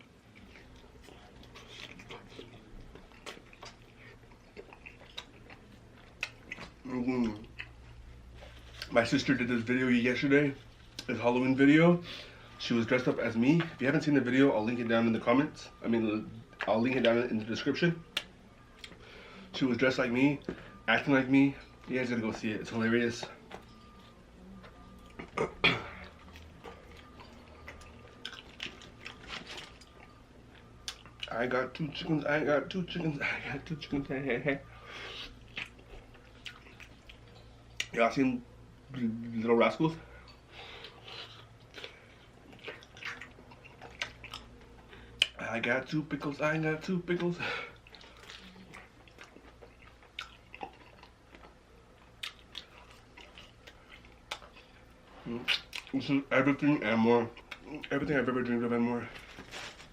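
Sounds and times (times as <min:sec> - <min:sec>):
chewing and wet mouth clicks: 0:00.3 - 0:07.8, 0:18.1 - 0:19.0, 0:26.0 - 0:31.4, 0:35.2 - 0:38.0, 0:40.3 - 0:45.4, 0:47.2 - 0:56.0.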